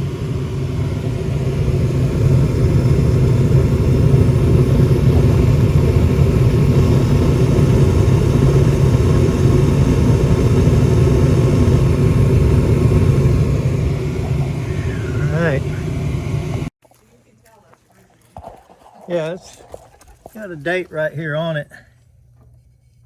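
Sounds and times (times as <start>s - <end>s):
gas furnace rumbling: 0.0s - 16.7s.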